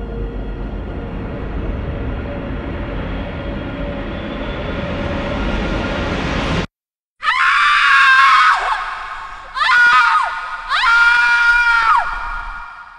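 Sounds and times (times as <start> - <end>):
dense low synth drone: 0.0 - 6.7
shrill scream-like sliding tones: 7.2 - 12.9.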